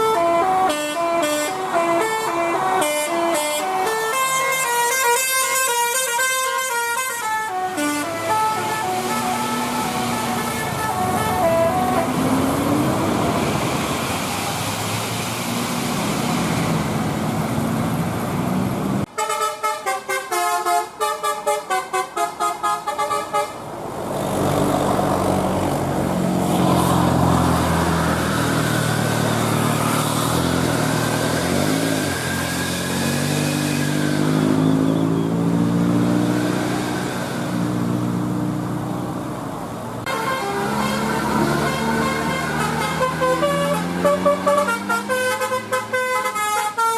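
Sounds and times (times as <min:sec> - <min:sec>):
musical bus horn tune: 0:00.0 - 0:13.2, 0:19.1 - 0:23.6, 0:40.1 - 0:46.9
bus engine: 0:00.0 - 0:46.9
road noise: 0:00.0 - 0:46.9.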